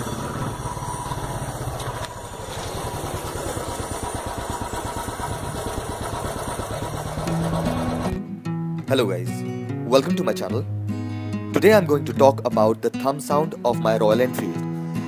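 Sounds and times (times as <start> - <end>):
motorcycle engine idling: 0.0 - 8.2.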